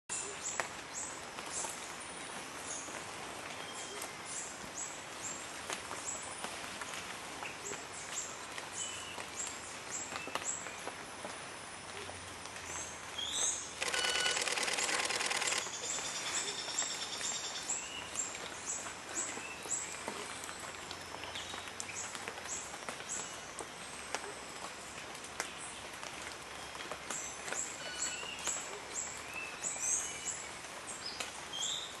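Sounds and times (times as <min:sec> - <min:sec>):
birds chirping: 0:13.2 - 0:17.9.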